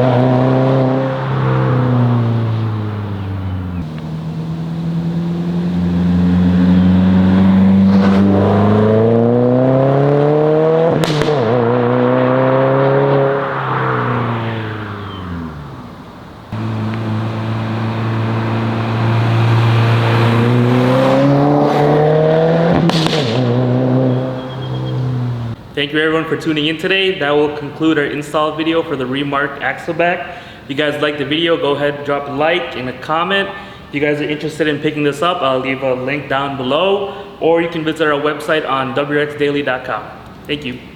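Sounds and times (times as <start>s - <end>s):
car engine idling and revving: 0.0s - 25.7s.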